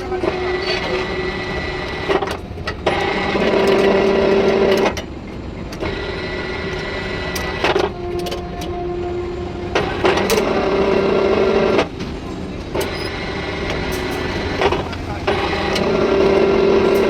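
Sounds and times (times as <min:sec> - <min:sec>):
machine motor whining: 0:12.9 - 0:17.0.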